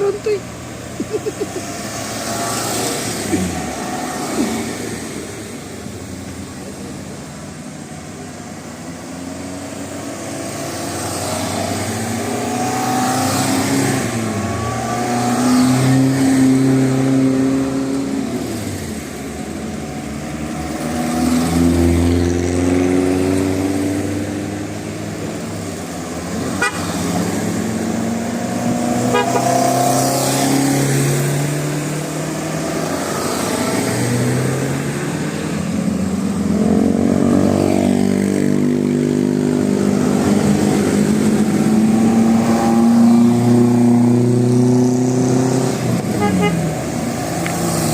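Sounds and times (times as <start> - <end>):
bus engines passing: 0.0 - 47.9
musical bus horns honking: 26.6 - 26.9, 29.0 - 29.7, 46.1 - 46.7.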